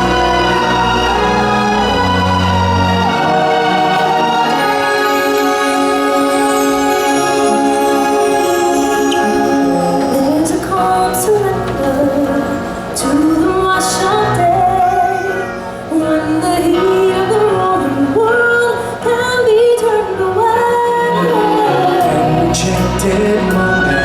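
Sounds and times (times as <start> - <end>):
woman singing: 0.0 - 24.0.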